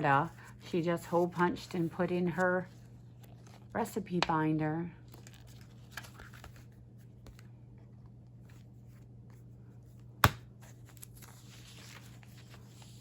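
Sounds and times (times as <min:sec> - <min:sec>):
paper rustling: 0:05.1 - 0:07.5, 0:10.6 - 0:13.0
ring binder snap: 0:10.2 - 0:10.5.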